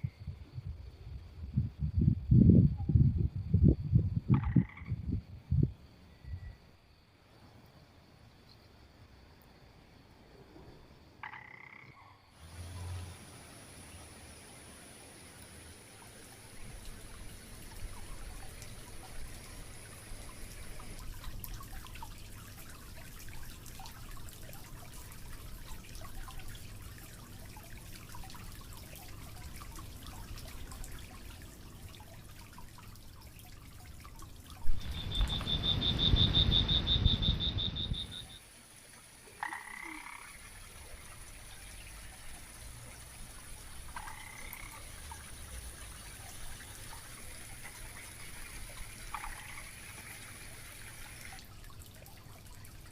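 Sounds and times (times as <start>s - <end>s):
faint steady crackle: 15.2s - 36.9s
short calls: 34.7s - 38.4s.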